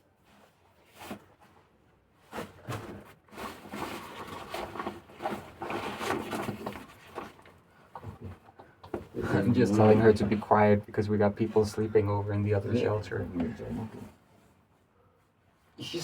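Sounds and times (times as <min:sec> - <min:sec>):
camping gear rustling and knocking: 0:00.2 - 0:10.4.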